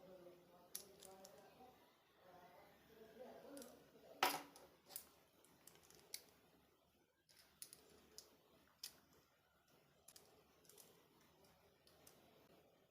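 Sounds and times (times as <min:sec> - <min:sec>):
small plastic pieces clicking: 0:10.1 - 0:11.0.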